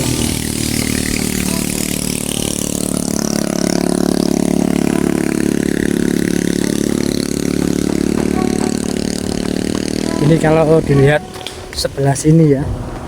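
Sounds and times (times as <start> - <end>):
vehicle engine passing: 0.0 - 13.0.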